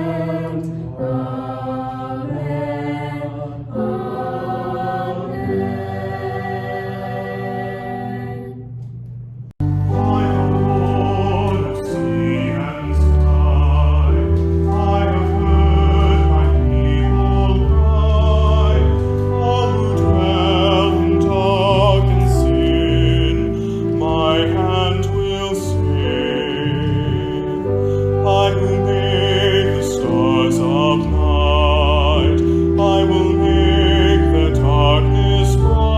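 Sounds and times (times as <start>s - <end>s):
instrumental accompaniment: 0.0s - 35.9s
held organ chord: 9.6s - 35.9s
person singing with vibrato: 9.8s - 35.9s.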